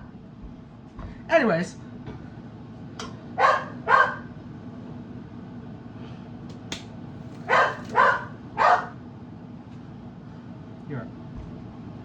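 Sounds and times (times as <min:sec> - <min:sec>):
dog barking: 0:03.4 - 0:04.3, 0:07.4 - 0:09.0.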